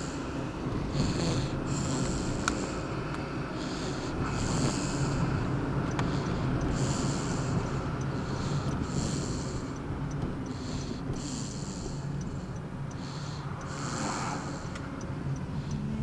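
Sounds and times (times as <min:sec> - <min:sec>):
steady low hum: 0:00.0 - 0:16.0
wheezy snoring: 0:00.8 - 0:02.9, 0:03.6 - 0:09.8, 0:10.5 - 0:14.8.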